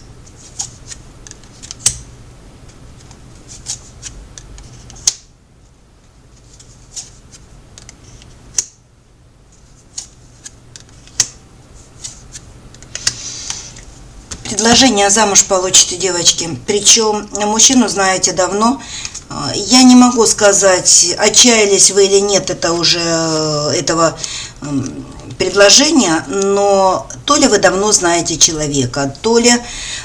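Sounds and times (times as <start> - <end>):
soft rustle of cards: 0.2 - 1.9, 2.6 - 8.4, 9.5 - 14.9
cards clicking and snapping: 0.6 - 2.1, 4.0 - 5.3, 9.9 - 11.4.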